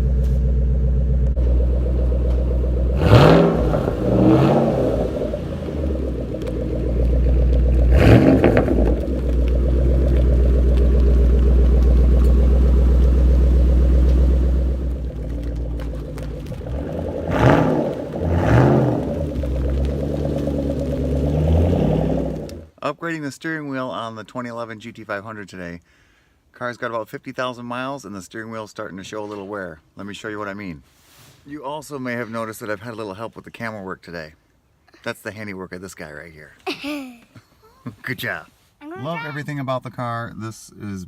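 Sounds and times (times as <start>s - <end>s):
car engine idling and revving: 0.0s - 22.8s.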